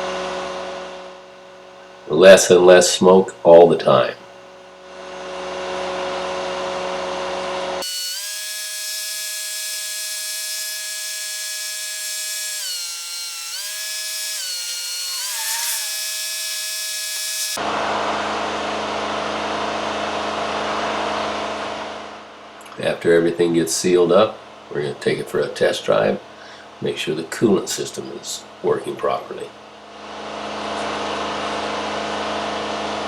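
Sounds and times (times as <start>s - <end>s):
sped-up engine whine: 4.9s - 22.3s.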